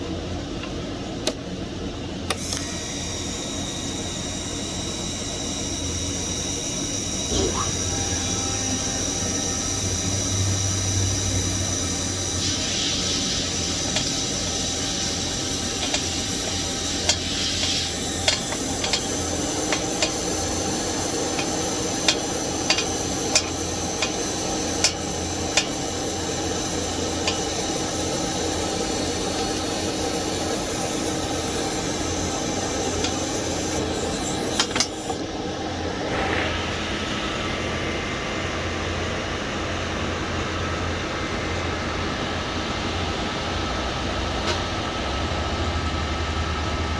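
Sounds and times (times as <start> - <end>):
welding arc hiss and buzz: 2.3 - 39.2
welding cup clicks: 13.3 - 25.9.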